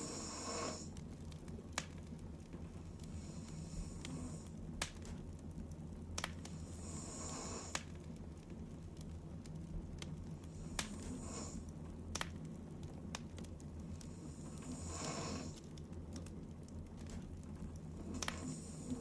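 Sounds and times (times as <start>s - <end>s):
woman snoring softly: 0.0s - 0.9s, 6.7s - 7.8s, 11.1s - 11.6s, 14.3s - 15.6s, 18.2s - 19.0s.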